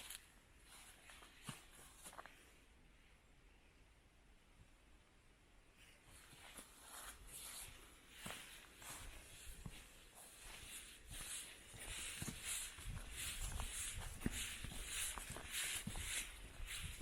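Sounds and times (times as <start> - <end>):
footsteps on forest trail: 0.0 - 2.4, 6.3 - 17.0.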